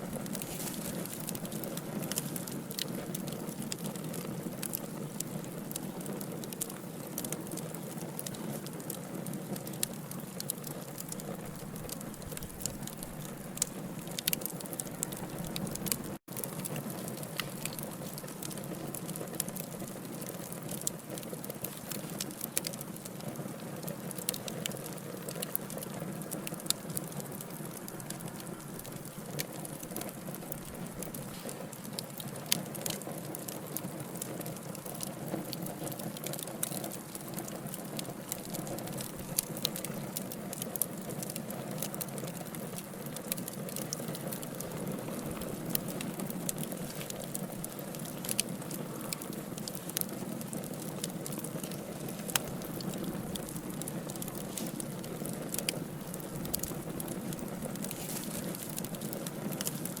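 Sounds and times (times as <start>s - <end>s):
wood fire crackling and popping: 0.0s - 60.0s.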